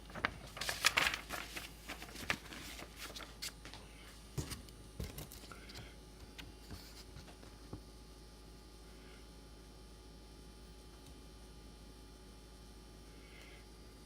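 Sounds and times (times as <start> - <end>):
paper rustling: 0.0 - 3.8, 4.4 - 7.5.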